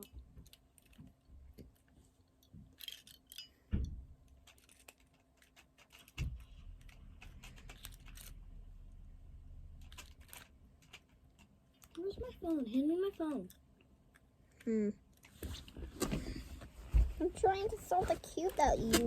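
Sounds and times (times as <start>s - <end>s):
puzzle cube plastic clicks: 4.2s - 9.0s, 9.7s - 15.6s.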